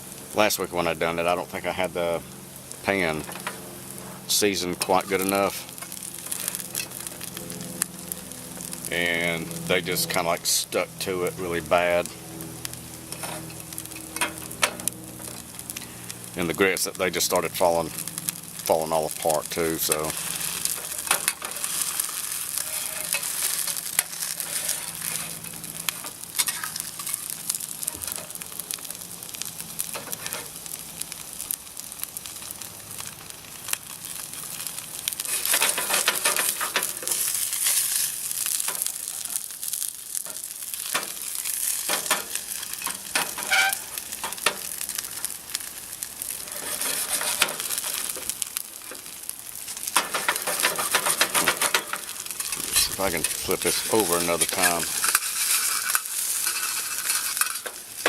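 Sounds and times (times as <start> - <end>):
frying in hot oil: 0.0 - 58.0.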